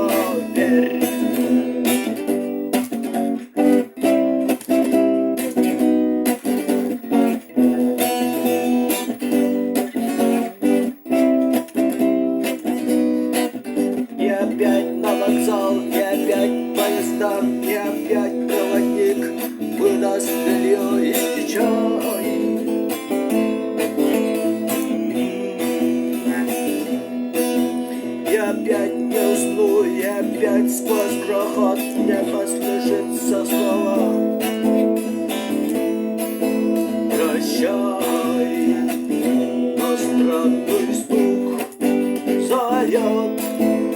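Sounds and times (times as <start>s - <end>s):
acoustic guitar strumming: 0.0s - 43.9s.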